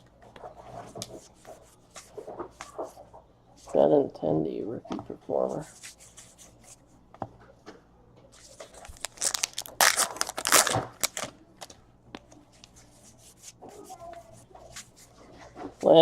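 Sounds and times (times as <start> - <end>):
wrapper tearing and crinkling: 8.7 - 11.8.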